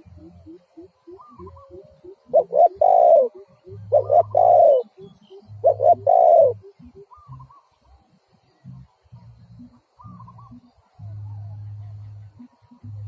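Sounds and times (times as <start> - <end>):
dove cooing: 0.0 - 7.9, 9.6 - 13.0.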